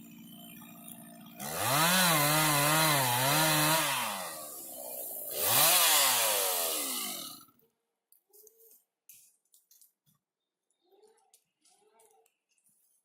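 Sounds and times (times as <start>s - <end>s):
chainsaw revving: 0.0s - 7.5s.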